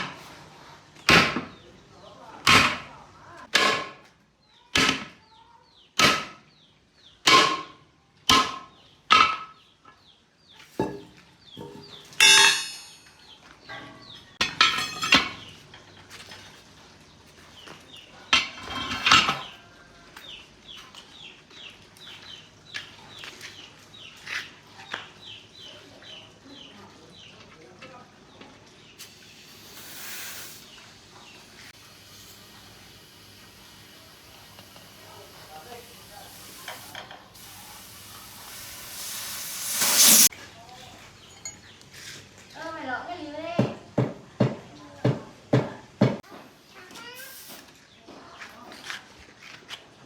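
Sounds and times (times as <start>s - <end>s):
hammer striking metal: 12.2s - 13.2s
birds chirping: 19.4s - 32.0s.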